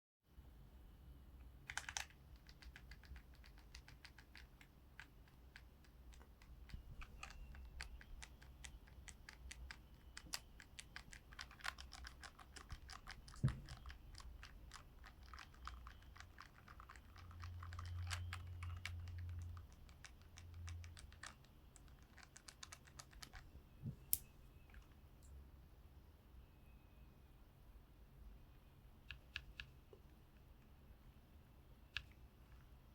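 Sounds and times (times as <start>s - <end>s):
keycaps clicking and rattling: 1.7s - 23.5s.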